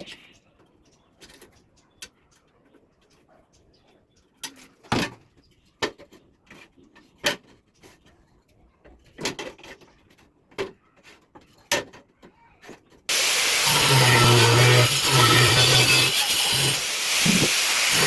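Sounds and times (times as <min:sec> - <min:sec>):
power tool running: 0:13.1 - 0:18.0.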